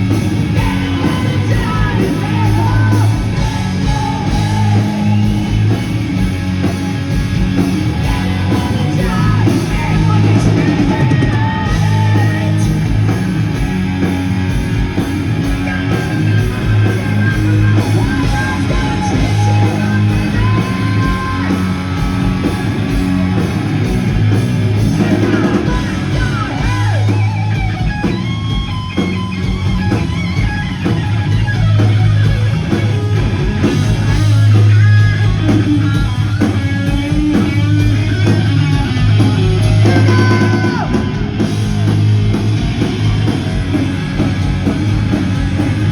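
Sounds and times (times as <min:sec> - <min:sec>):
live hard rock band: 0:00.0 - 0:45.9
person singing: 0:39.2 - 0:41.2.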